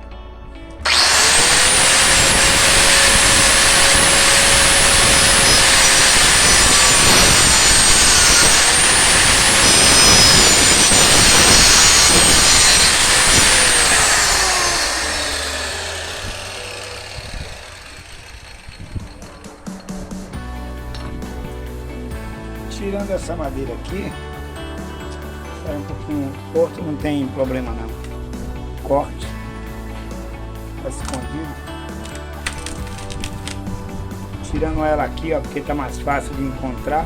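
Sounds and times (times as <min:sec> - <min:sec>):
electric power saw cutting wood: 0:00.8 - 0:20.3.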